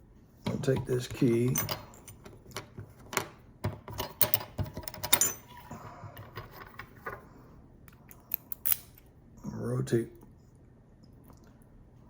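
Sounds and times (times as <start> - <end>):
padlock and key clicking: 0.6 - 2.3, 8.3 - 9.0.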